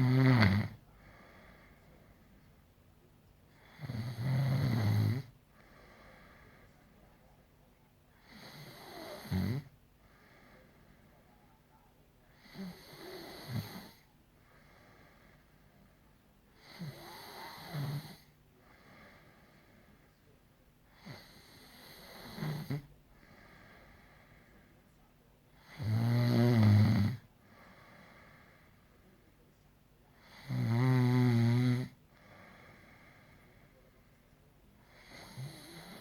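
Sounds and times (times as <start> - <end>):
person snoring: 0.0 - 0.8, 3.6 - 5.3, 8.2 - 9.7, 16.6 - 18.3, 21.0 - 22.9, 25.6 - 27.2, 30.2 - 33.5, 34.9 - 36.0
quiet breathing: 0.0 - 36.0.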